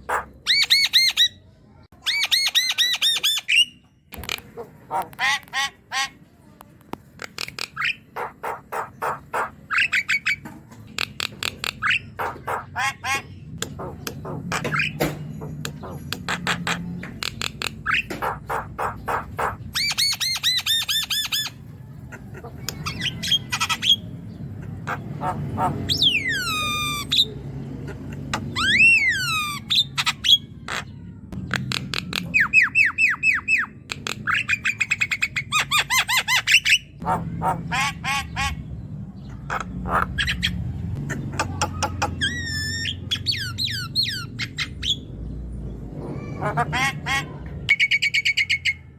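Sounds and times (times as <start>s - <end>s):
myna bird singing: 0.0s - 48.9s.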